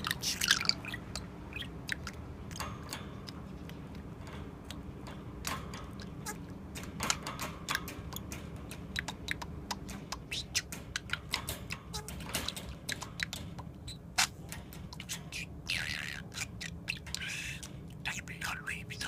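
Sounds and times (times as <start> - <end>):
budgerigar chattering: 0.0 - 2.2, 8.9 - 12.1, 15.0 - 19.0.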